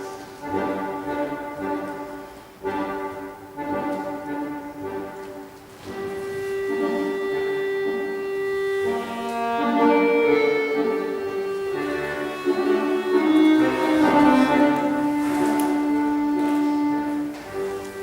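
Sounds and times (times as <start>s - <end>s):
slow instrumental melody: 0.0s - 18.0s.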